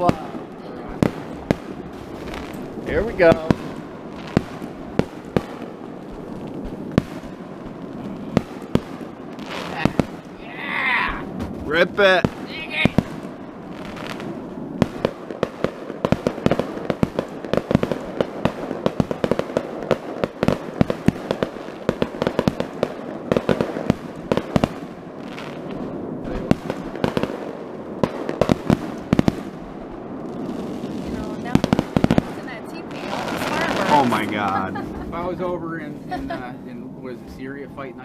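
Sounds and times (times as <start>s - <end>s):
fireworks cracks and bangs: 0.0s - 38.0s
steady crackle: 0.0s - 38.0s.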